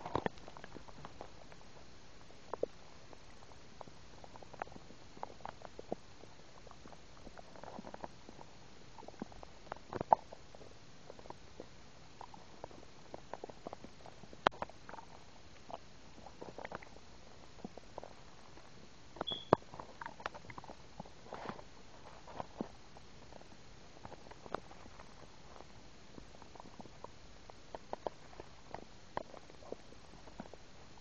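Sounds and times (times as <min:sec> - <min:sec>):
stomach gurgling: 0:00.0 - 0:31.0
high squeak: 0:19.3 - 0:19.6.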